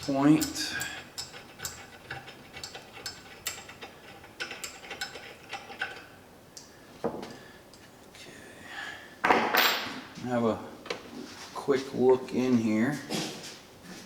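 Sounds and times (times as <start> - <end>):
metal scrape: 0.0 - 6.1
metallic ticks and clicks: 0.0 - 6.7.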